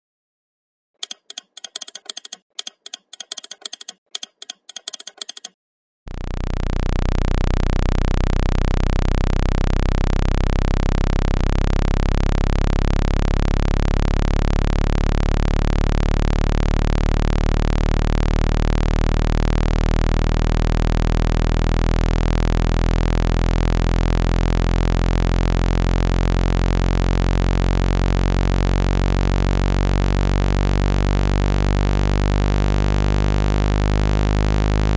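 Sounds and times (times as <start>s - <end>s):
rapid high-pitched clicks: 1.0s - 5.6s
loud low buzzing tone: 6.1s - 34.9s.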